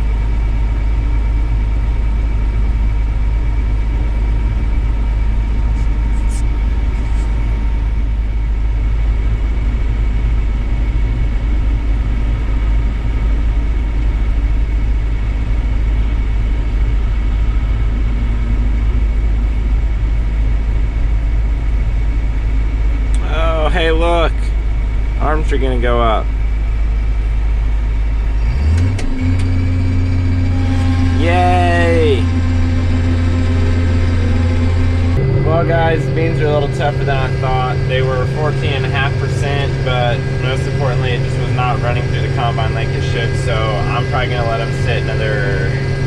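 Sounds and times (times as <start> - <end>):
faint whining tones: 0.0 - 46.0
vehicle engine idling: 0.0 - 46.0.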